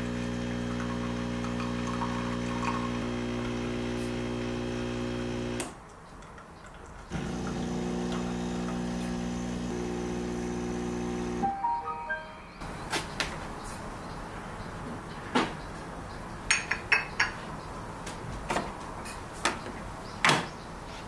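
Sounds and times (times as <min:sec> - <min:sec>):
coffee machine pump humming: 0:00.0 - 0:05.7, 0:07.1 - 0:11.5.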